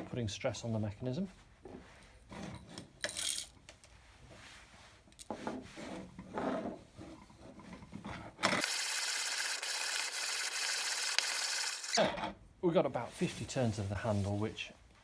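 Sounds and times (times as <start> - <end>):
coffee grinder scraping and clicking: 8.5 - 12.0
coffee beans grinding: 8.6 - 12.0.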